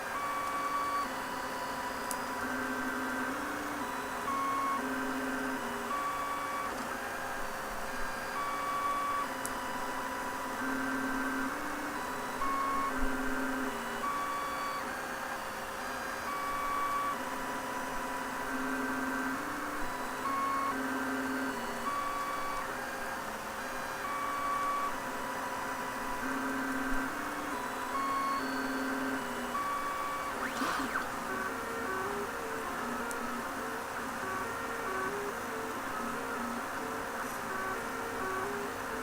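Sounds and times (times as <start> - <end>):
printer stepper motors whining: 0.0 - 39.0.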